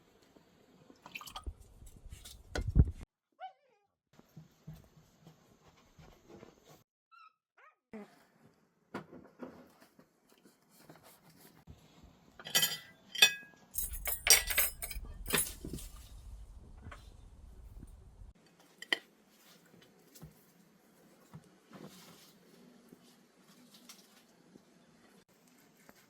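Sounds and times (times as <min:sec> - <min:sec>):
clinks and knocks: 0:12.4 - 0:18.3.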